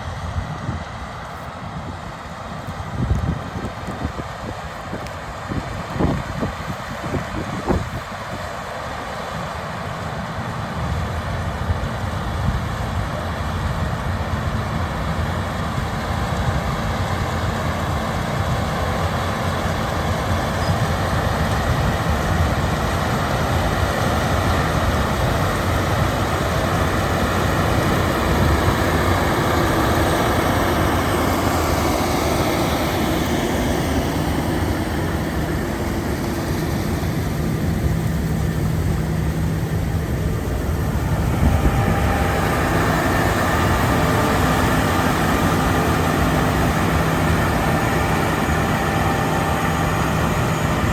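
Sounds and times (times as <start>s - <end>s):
diesel harvester droning and clattering: 0.0s - 50.9s
faint falling whine: 27.3s - 50.9s.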